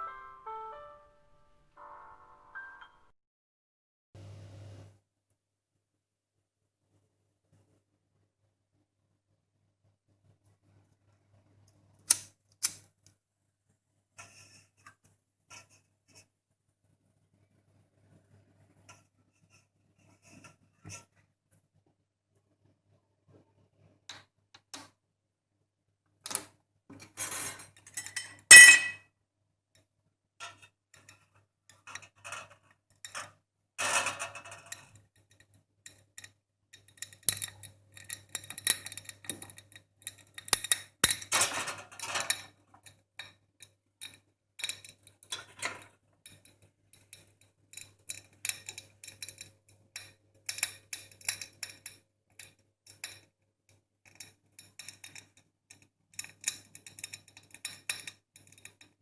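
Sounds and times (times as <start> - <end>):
dishes and cutlery clattering: 27.4 - 29.0
loud ringing clink: 28.5 - 29.0.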